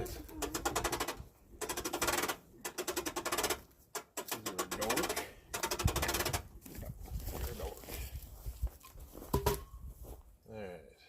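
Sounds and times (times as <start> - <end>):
crank mechanism clicking rapidly: 0.0 - 6.5.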